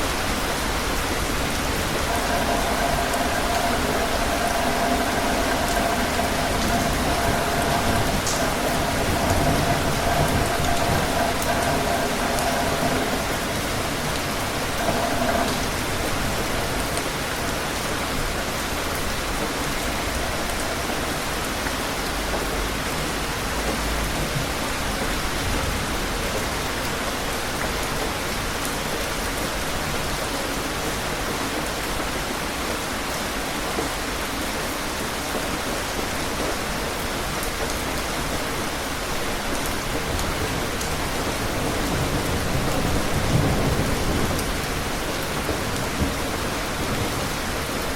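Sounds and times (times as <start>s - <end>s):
steady rain falling: 0.0s - 47.9s
distant thunder rumbling: 0.5s - 21.3s.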